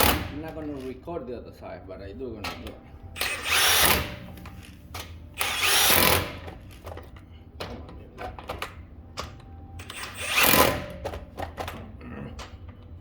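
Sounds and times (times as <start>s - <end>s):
power drill bursts: 3.2s - 4.7s, 5.4s - 6.8s, 9.8s - 11.0s.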